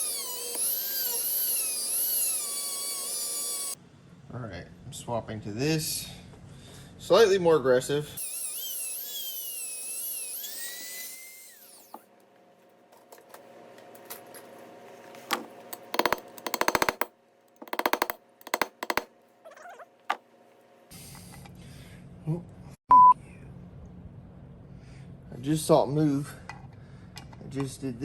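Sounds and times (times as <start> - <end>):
rotary grinder whine: 0.0 - 3.8, 8.2 - 12.0.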